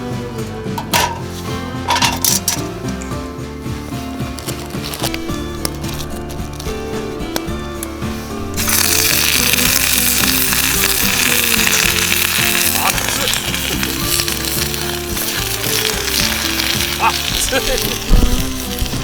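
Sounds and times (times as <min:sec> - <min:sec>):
background music: 0:00.0 - 0:19.0
food frying with sizzle: 0:08.6 - 0:19.0.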